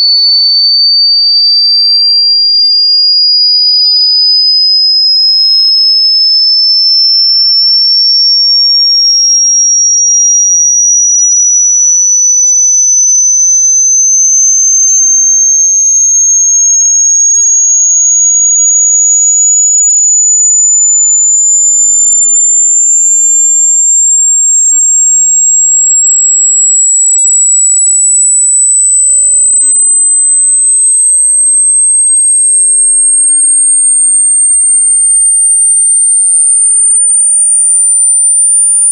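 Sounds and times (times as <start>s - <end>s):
rising electronic sine tone: 0.0s - 38.9s.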